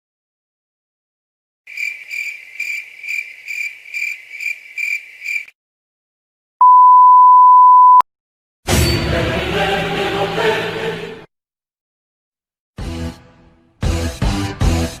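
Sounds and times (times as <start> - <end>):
cricket chirping: 1.7 - 5.5
censor beep: 6.6 - 8.0.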